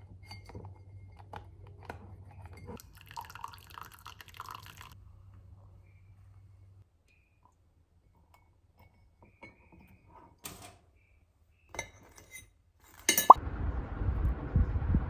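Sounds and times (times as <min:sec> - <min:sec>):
glassware and tableware clinks: 0:00.1 - 0:01.4, 0:11.7 - 0:13.4.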